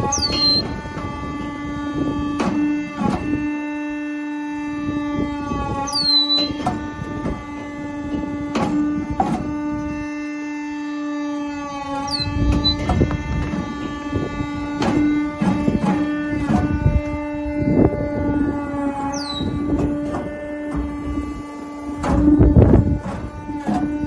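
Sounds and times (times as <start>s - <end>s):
high squeal falling in pitch: 0.0s - 2.4s, 4.8s - 8.2s, 9.0s - 15.4s, 16.8s - 21.9s
briquetting machine hum: 0.0s - 24.0s
sharp knocks: 8.5s - 9.7s, 14.8s - 17.2s.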